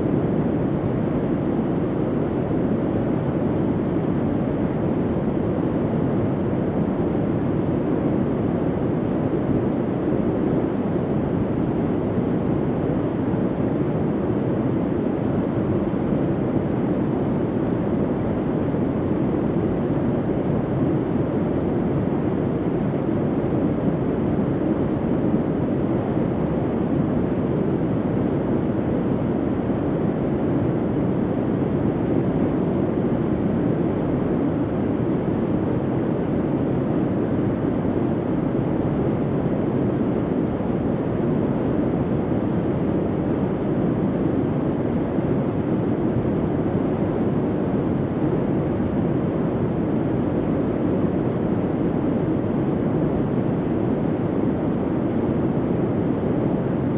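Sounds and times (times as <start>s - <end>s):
steady low ambient hum: 0.0s - 56.9s.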